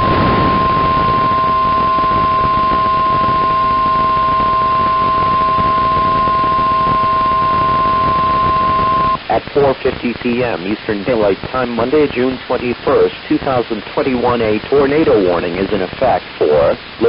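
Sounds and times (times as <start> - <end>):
electronic alarm tone: 0.0 - 9.2
fainter lower tone: 0.0 - 9.2.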